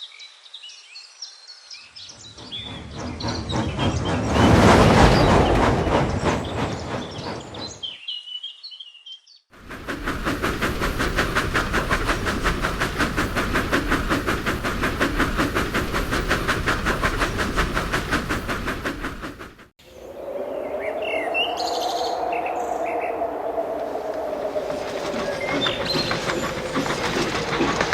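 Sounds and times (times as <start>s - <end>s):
birdsong: 0.0s - 9.5s, 19.8s - 27.9s
steam locomotive exhaust chuffs: 2.1s - 7.9s, 9.6s - 19.7s, 21.0s - 27.9s
steady whistle-like tone: 2.2s - 7.8s, 19.8s - 27.8s.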